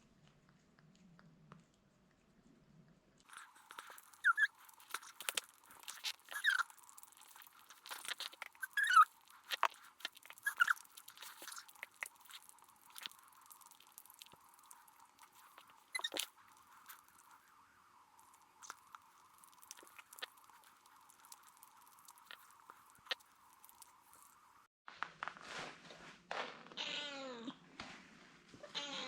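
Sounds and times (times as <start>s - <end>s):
cat crunching food: 3.2s - 17.5s, 18.2s - 24.4s.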